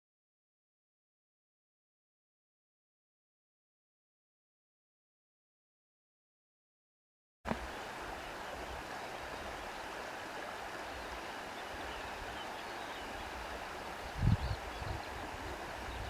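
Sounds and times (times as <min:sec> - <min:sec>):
running water rushing: 0:07.5 - 0:16.0.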